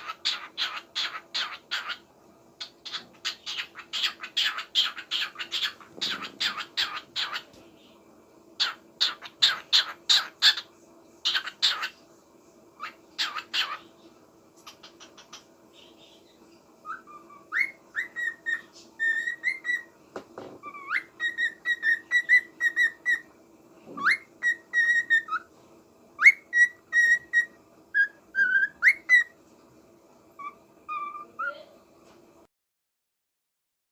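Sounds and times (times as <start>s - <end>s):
parrot whistling a song: 0.0s - 2.0s, 2.6s - 7.5s, 8.6s - 11.9s, 12.8s - 13.8s, 16.8s - 19.9s, 20.6s - 23.3s, 24.0s - 25.5s, 26.2s - 29.4s, 30.4s - 31.6s.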